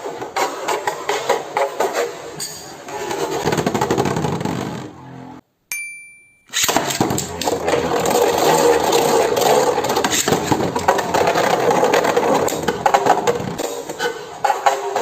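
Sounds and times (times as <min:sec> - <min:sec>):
short ringing ding: 0:05.7 - 0:06.7.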